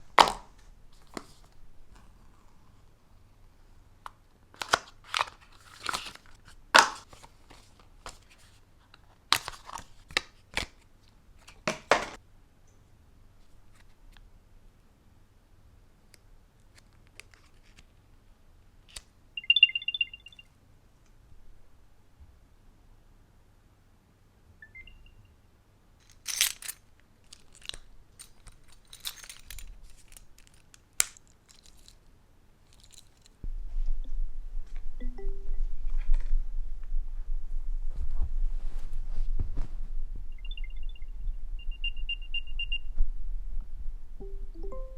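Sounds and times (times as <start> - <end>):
packaging crinkling and tearing: 4.6 - 8.4
packaging rustling: 26.0 - 32.0.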